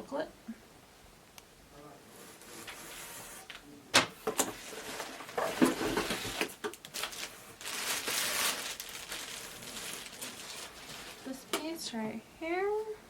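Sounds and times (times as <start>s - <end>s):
packaging rustling and crinkling: 4.4s - 11.4s.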